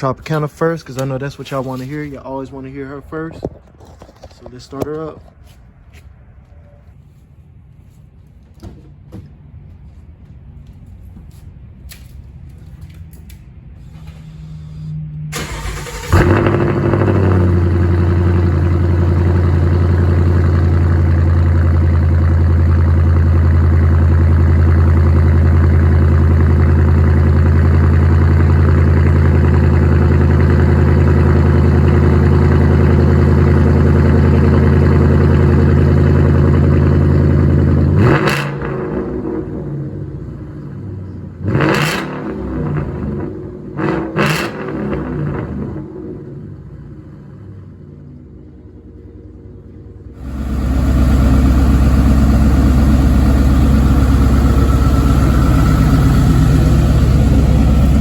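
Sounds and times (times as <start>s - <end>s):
car engine fast idling: 15.4s - 37.9s, 50.2s - 58.0s.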